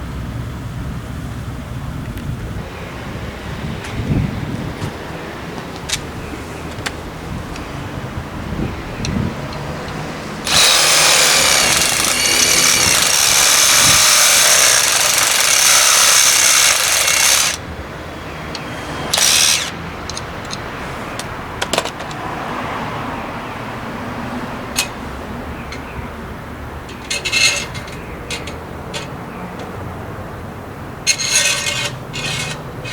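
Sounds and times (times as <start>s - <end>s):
power drill running: 10.4s - 17.6s, 18.6s - 19.8s, 31.1s - 32.9s.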